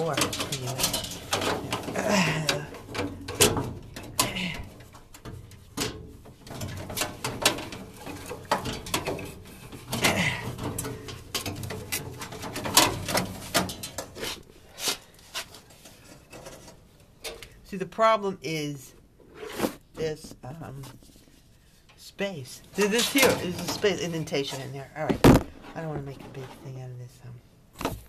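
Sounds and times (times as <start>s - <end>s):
filter clicking and scraping: 0.0s - 17.6s, 22.6s - 26.8s.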